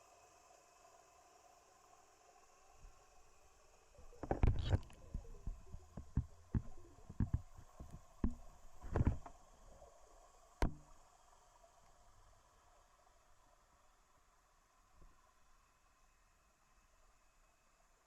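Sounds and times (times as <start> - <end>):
faint hiss: 0.0 - 18.0
knocks and dull thumps: 4.2 - 9.3, 10.6 - 10.9.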